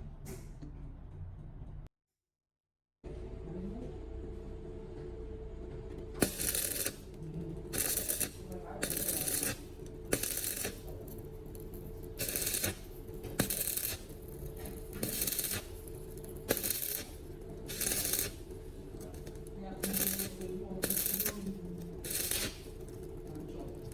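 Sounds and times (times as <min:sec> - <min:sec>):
hand tool rasping: 0:07.8 - 0:10.8, 0:11.5 - 0:21.4.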